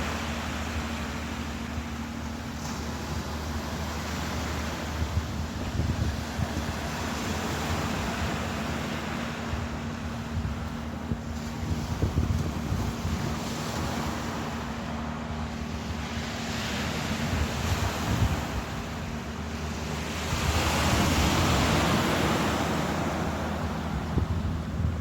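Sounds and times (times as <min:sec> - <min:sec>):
ocean surf washing ashore: 0:00.0 - 0:25.0
wind buffeting microphone: 0:01.6 - 0:25.0.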